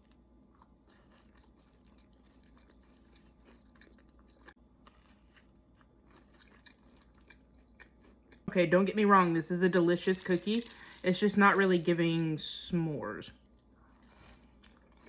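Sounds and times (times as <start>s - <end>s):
faint chewing with mouth clicks: 0.0s - 8.5s.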